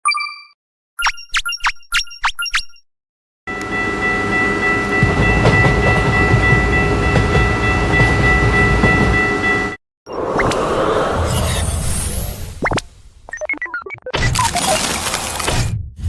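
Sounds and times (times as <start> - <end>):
train horn chord: 3.5 - 9.8
train rumbling: 3.5 - 11.8
train wheels clacking: 3.6 - 9.8.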